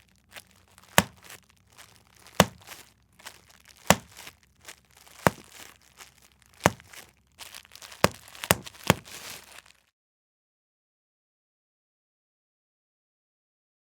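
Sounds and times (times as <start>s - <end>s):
bubble wrap crinkling: 0.0s - 9.9s
bubble wrap popping: 0.0s - 9.9s.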